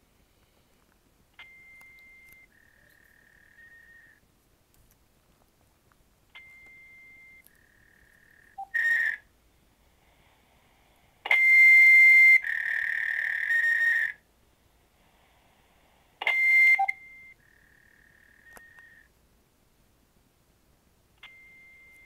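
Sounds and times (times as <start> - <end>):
electronic phone tones: 1.4 - 4.2, 6.4 - 8.9, 11.3 - 12.4, 16.2 - 19.1, 21.2 - 22.0.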